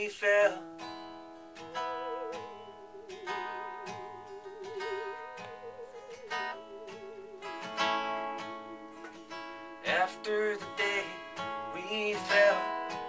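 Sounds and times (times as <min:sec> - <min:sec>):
strummed acoustic guitar: 0:00.0 - 0:13.0
musical saw melody: 0:01.6 - 0:10.1.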